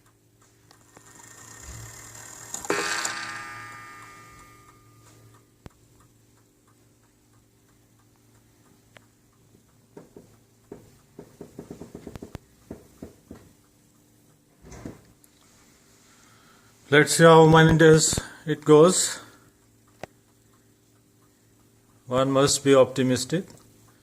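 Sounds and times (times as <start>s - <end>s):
clock ticking: 0.0s - 14.5s, 19.0s - 24.0s
clock strike ringing: 1.0s - 5.4s.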